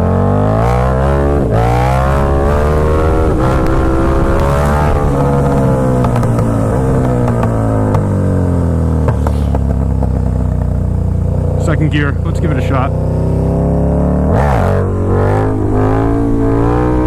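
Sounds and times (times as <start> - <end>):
motorcycle engine accelerating: 0.0 - 17.0
wind rushing over microphone: 1.2 - 8.8, 12.9 - 17.0.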